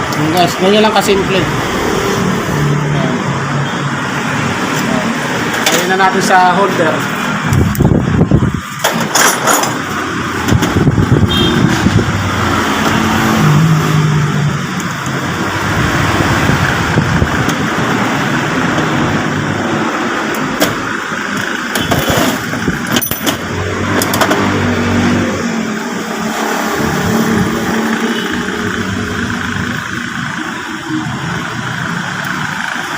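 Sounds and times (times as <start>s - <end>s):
vehicle engine running: 9.7s - 32.9s.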